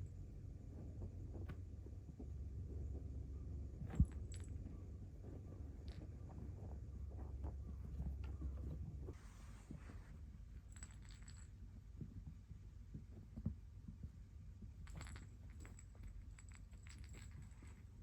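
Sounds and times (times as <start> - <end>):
light clicking and jingling: 14.7 - 18.0.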